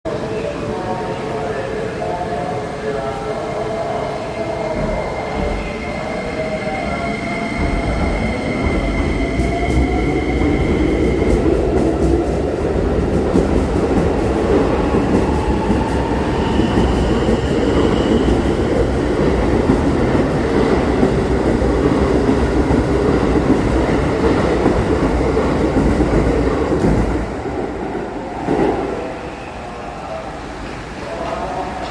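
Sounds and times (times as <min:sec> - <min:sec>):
train wheels rumbling on rails: 0:04.4 - 0:29.4.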